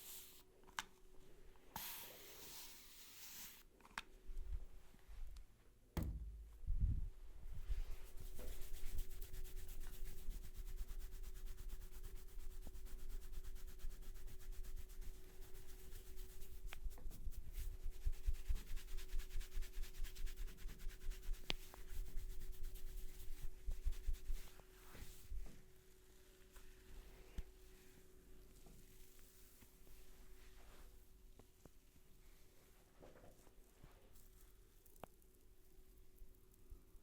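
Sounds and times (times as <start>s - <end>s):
hands rubbing hair and scalp: 7.6s - 25.5s.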